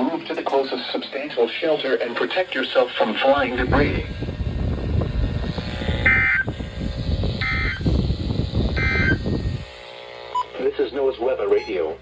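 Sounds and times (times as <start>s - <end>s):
buzzy digital warbles from radio: 6.0s - 6.5s, 7.4s - 8.0s, 8.7s - 9.3s, 10.3s - 12.0s.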